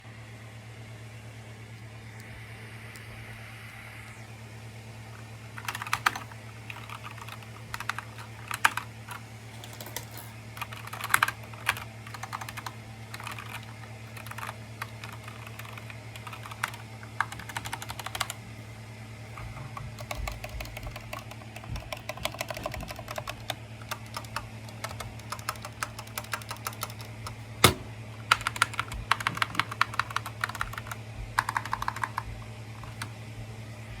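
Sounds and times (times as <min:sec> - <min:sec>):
mechanical keyboard typing: 0:05.5 - 0:18.4, 0:19.5 - 0:33.1.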